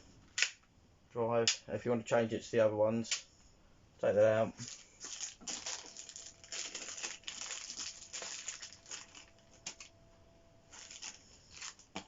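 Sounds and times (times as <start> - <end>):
hands rustling and clicking plastic: 4.6 - 9.9, 10.7 - 12.0
faint steady tone: 5.7 - 11.8.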